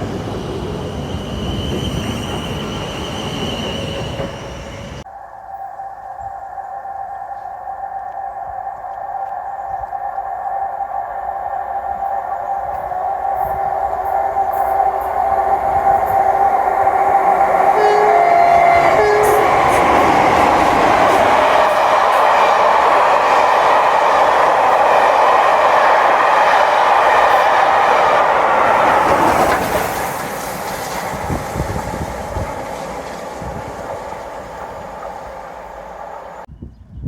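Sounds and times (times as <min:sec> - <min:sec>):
train passing at speed: 0:00.0 - 0:36.5
wheel and track noise: 0:11.7 - 0:36.5
two-tone train horn: 0:17.4 - 0:22.9.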